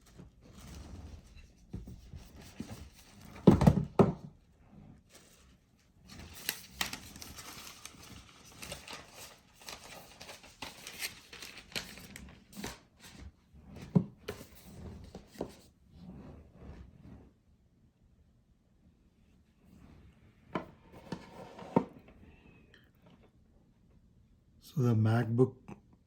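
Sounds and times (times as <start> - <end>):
packaging crinkling: 6.3 - 12.8.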